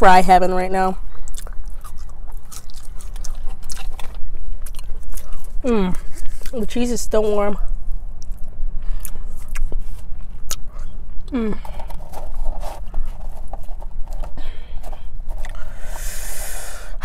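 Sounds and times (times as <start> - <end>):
chewing with wet mouth clicks: 1.2 - 5.6, 8.2 - 10.9
breath: 8.8 - 9.5, 14.4 - 17.0.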